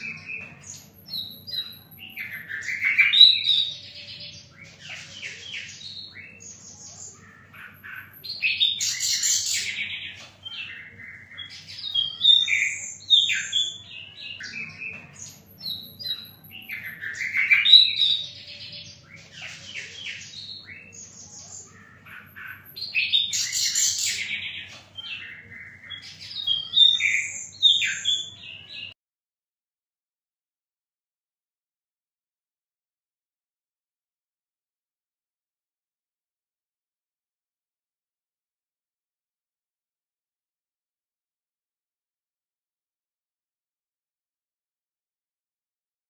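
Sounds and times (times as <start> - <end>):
bird singing chirps and trills: 0.0 - 29.0.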